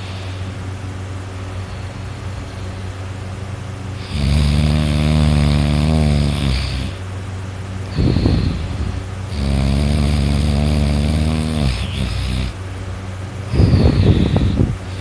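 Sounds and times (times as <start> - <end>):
person snoring heavily: 0.0 - 0.6, 4.0 - 7.0, 7.8 - 12.6, 13.5 - 15.0
steady low hum: 0.0 - 15.0.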